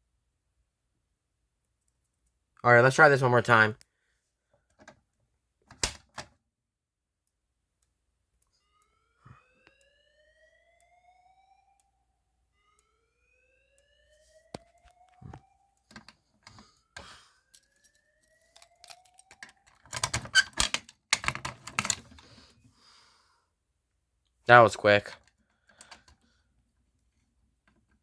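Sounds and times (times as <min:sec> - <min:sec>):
fire alarm whoop tone: 0:08.4 - 0:15.9, 0:16.5 - 0:19.6.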